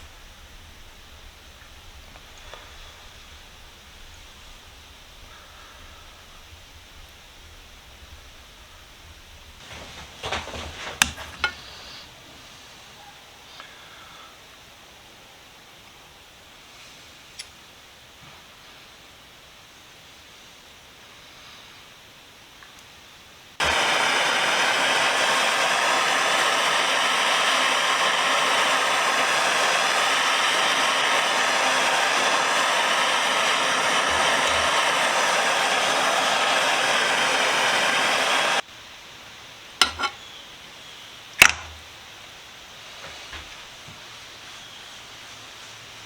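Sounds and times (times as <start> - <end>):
rushing blown air: 9.6 - 12.1, 23.6 - 38.6.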